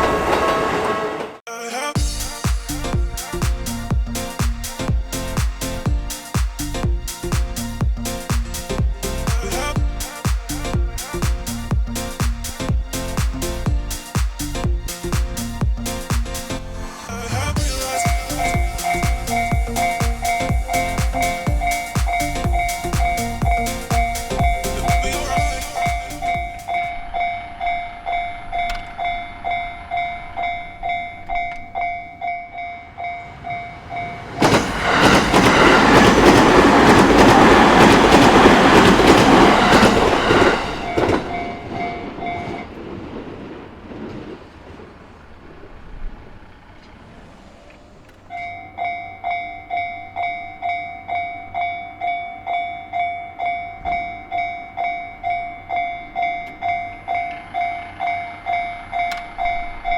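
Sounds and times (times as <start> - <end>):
train passing loudly: 0.0 - 59.9
level crossing alarm dings: 17.6 - 36.4, 48.3 - 59.9.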